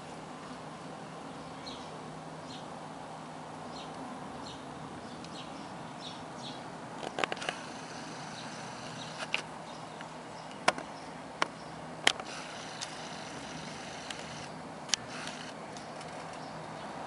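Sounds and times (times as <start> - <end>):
steady background hiss: 0.0 - 17.0
sharp clicks: 11.4 - 16.4.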